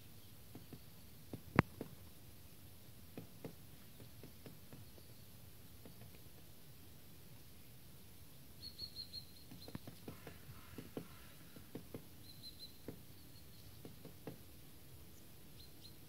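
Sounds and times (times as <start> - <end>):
woodpecker pecking at wood: 0.5 - 2.0, 3.1 - 5.2, 5.8 - 6.5, 9.4 - 14.5
high bird chirps: 8.6 - 11.6, 12.2 - 14.0.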